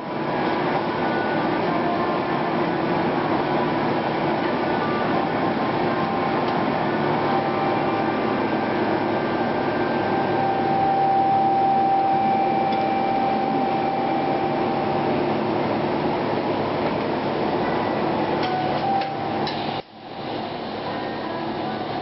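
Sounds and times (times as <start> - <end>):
welding hiss and hum: 0.1 - 22.0
high steady tone: 4.7 - 16.4.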